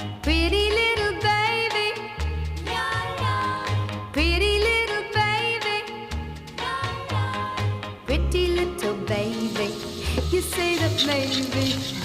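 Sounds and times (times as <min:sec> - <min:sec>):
bass and backing instruments: 0:00.0 - 0:12.0
person singing: 0:06.6 - 0:12.0.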